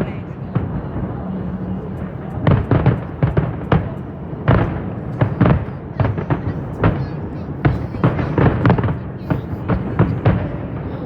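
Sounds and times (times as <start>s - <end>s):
fireworks crackle and rumble: 0.0s - 11.0s
firework shells bursting: 2.0s - 7.0s.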